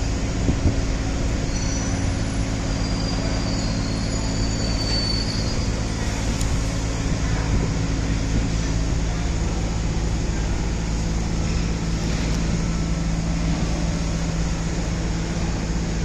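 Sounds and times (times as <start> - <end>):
hoist motor hum and rumble: 0.0 - 16.0
faint high squeals: 1.4 - 6.8.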